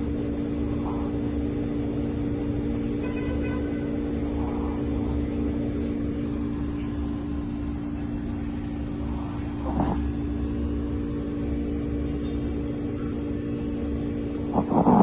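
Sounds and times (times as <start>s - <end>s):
steady electrical hum: 0.0s - 15.0s
dog snoring: 0.7s - 1.4s, 4.2s - 5.3s, 9.0s - 10.4s, 14.5s - 15.0s.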